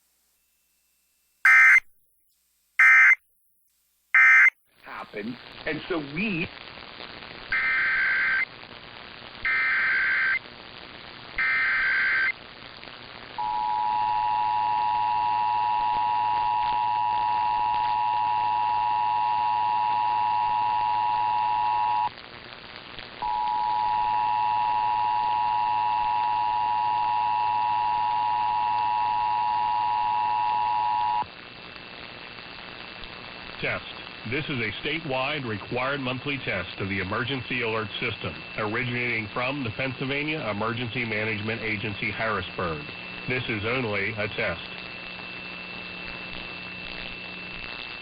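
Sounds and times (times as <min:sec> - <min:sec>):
background hiss: 0:00.0 - 0:16.8, 0:20.1 - 0:26.1, 0:31.2 - 0:48.0
two-tone attention signal: 0:01.5 - 0:01.8, 0:02.8 - 0:03.2, 0:04.2 - 0:04.6
digital data tone bursts: 0:01.5 - 0:01.9, 0:02.8 - 0:03.2, 0:04.2 - 0:04.6.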